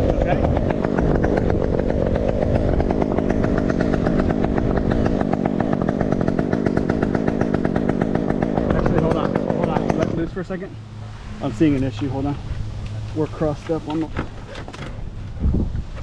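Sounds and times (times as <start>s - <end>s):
chainsaw engine running: 0.0s - 15.5s.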